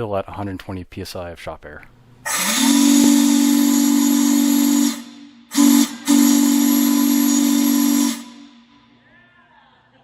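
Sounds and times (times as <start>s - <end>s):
steam whistle chord: 2.3s - 9.0s.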